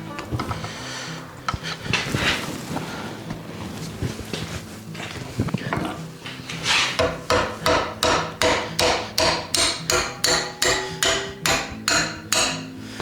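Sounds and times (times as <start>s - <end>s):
hammer striking steel: 7.0s - 12.8s.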